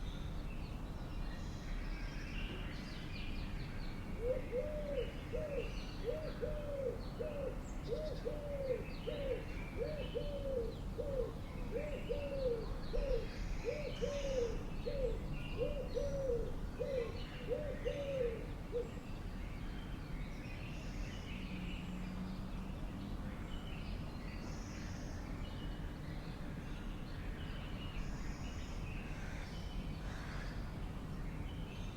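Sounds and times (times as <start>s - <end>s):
bird low hooting: 4.2s - 18.9s.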